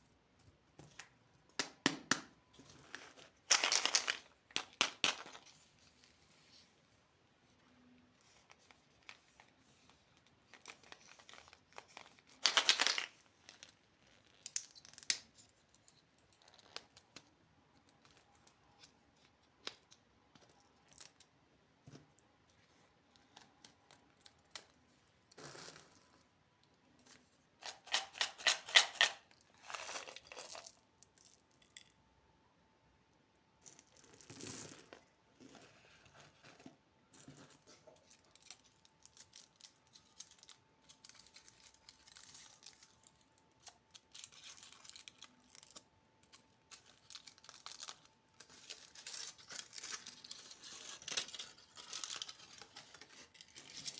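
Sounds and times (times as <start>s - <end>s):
candy wrappers crinkling: 2.8s - 5.6s, 10.2s - 17.3s, 27.6s - 32.0s, 37.6s - 53.9s.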